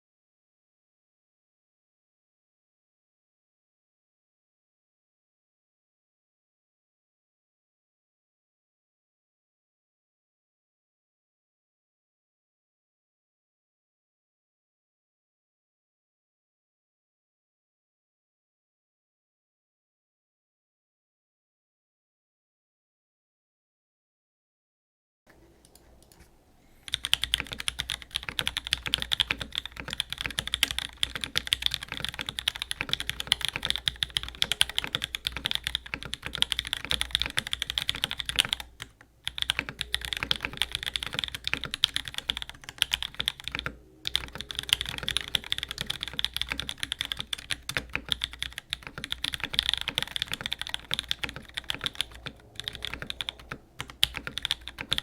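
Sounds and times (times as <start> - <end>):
mechanical keyboard typing: 26.9 - 55.0.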